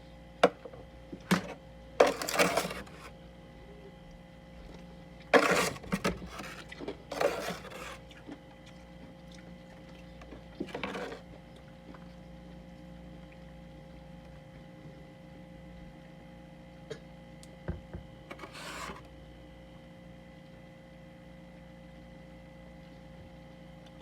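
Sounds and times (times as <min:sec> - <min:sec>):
steady low hum: 0:00.0 - 0:24.0
freezer frost crunching: 0:01.4 - 0:03.1, 0:05.3 - 0:08.2.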